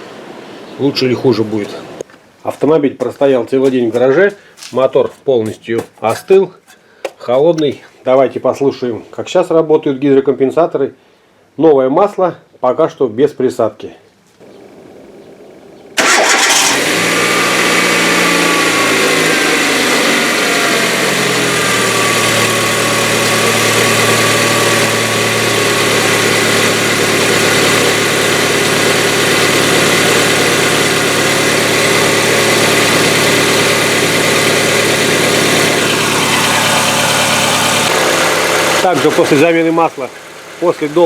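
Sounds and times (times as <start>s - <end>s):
car engine idling: 14.5s - 41.0s.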